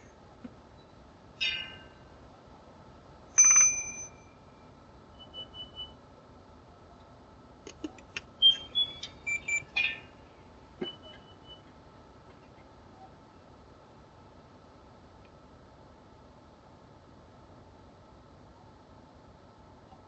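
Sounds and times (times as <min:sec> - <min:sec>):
ringing tones: 0:03.4 - 0:05.8
electronic beeps and chirps: 0:05.2 - 0:05.9, 0:08.4 - 0:10.1, 0:10.8 - 0:11.6.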